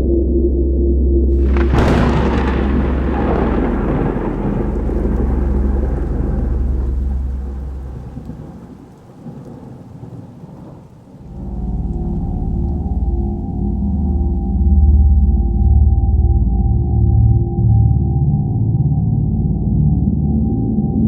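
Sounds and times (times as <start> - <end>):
rain hiss: 1.4 - 14.9
rolling thunder: 1.4 - 16.2.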